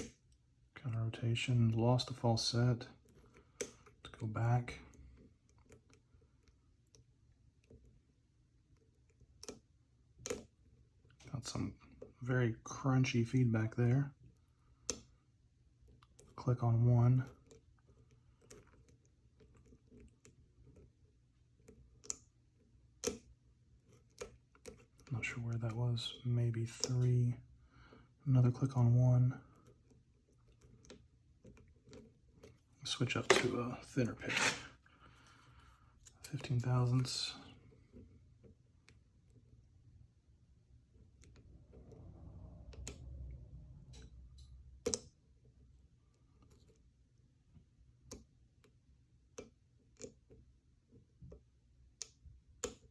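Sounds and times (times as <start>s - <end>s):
lock pick clicking and scraping: 10.2s - 10.5s, 29.5s - 34.7s, 43.9s - 45.1s
lock pick ticking and scraping: 43.9s - 45.1s.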